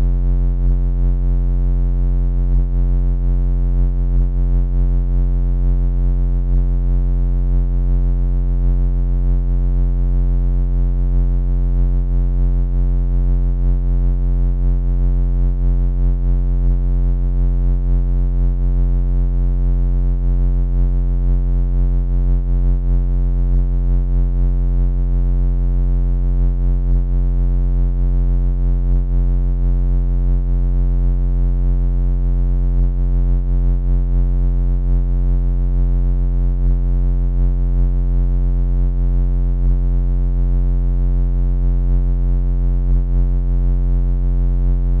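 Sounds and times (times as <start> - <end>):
electronic laser buzzing hum: 0.0 - 1.2, 1.8 - 6.9, 16.6 - 16.8.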